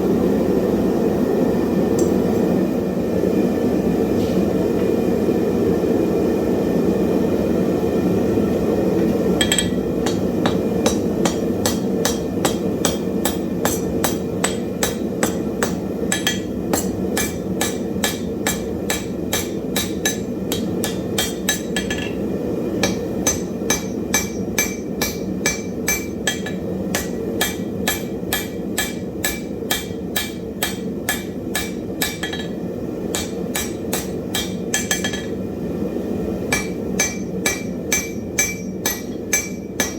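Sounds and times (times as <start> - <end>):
hammer ringing on anvil: 9.4 - 22.2, 22.8 - 35.4, 36.5 - 39.9.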